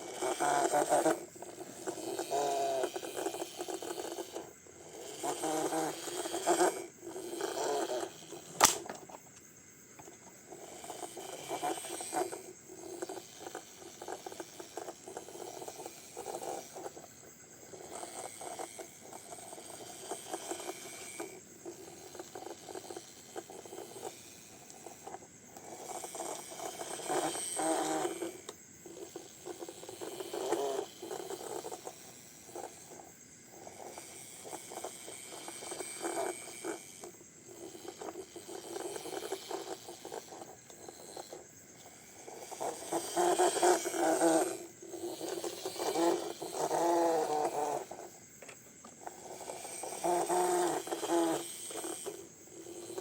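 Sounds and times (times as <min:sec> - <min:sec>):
clicks taps and scraping: 0:08.5 - 0:10.4, 0:47.2 - 0:49.2.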